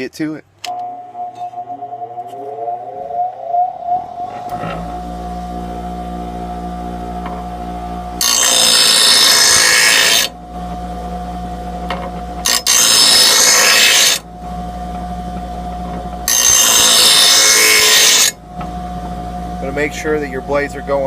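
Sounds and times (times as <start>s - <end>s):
grinder motor humming: 0.7s - 13.6s
blade grinding rasp: 8.2s - 10.3s, 12.5s - 14.2s.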